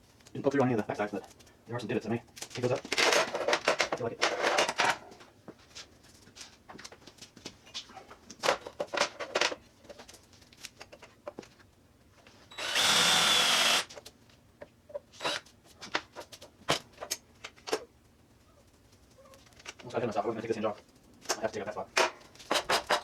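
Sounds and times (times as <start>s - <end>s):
electric drill whining: 12.5s - 13.9s, 15.2s - 15.4s.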